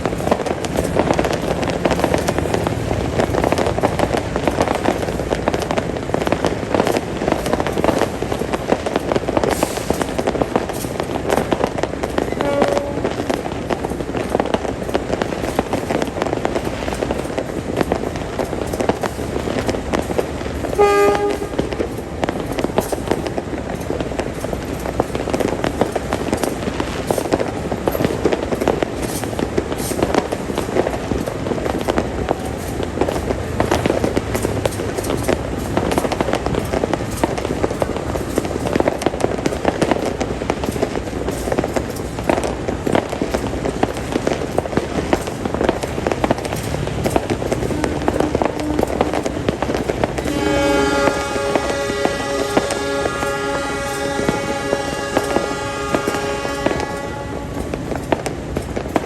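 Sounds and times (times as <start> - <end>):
diesel locomotives idling: 0.0 - 12.7, 13.4 - 59.0
firecrackers crackling and popping: 0.0 - 59.0
locomotive air horns: 9.4 - 11.0, 12.2 - 13.6, 20.6 - 23.4, 47.5 - 58.2.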